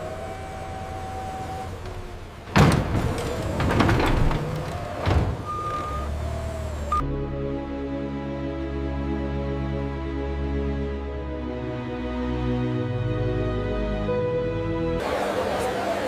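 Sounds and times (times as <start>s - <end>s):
clattering and clanking: 1.8s - 5.8s.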